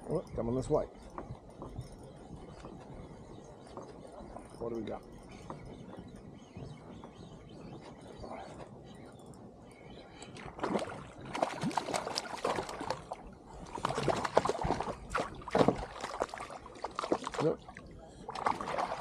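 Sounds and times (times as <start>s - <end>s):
water splashing against kayak: 10.6s - 19.0s.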